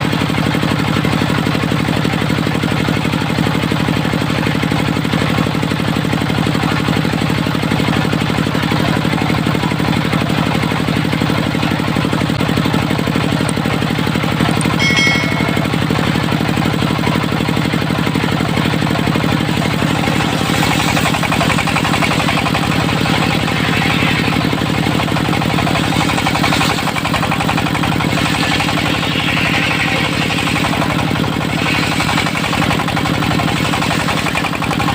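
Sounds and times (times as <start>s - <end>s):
diesel engine knocking: 0.0s - 14.7s, 15.7s - 34.9s
brief high tone: 14.8s - 16.4s.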